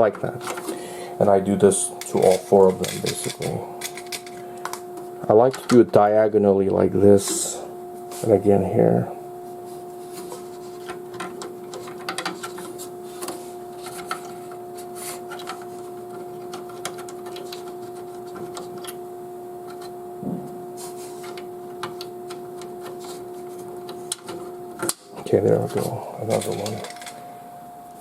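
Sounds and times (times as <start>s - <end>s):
faint steady hum: 0.0s - 28.0s
plastic parts clicking: 26.3s - 27.2s.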